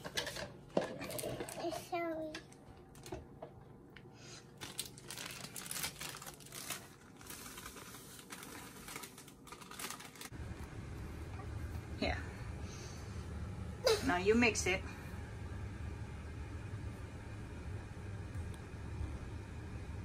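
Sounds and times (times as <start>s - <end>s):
plastic bag crinkling: 4.4s - 10.4s.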